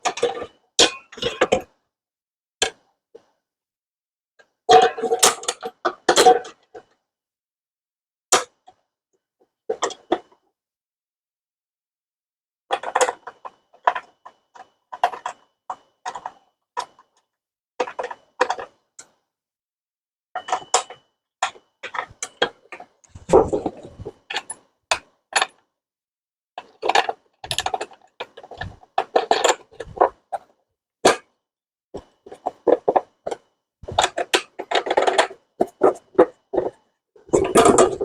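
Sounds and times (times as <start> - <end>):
metal parts clicking and clanking: 26.6 - 31.2, 32.0 - 38.0.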